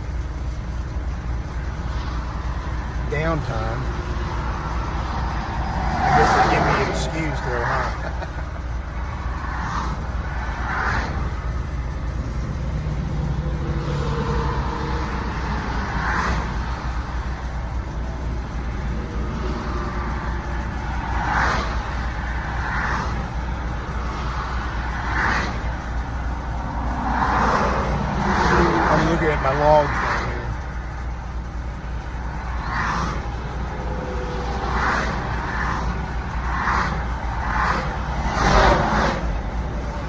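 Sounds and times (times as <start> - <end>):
low vehicle rumble: 0.0 - 40.0
traffic swishing past: 1.2 - 40.0.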